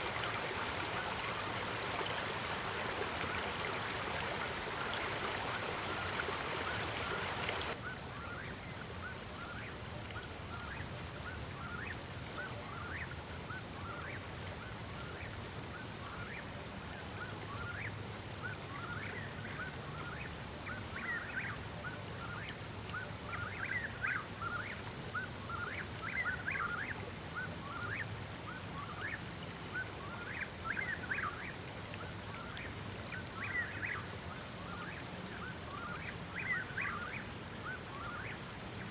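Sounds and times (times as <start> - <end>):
rushing creek water: 0.0 - 7.8, 18.2 - 38.9.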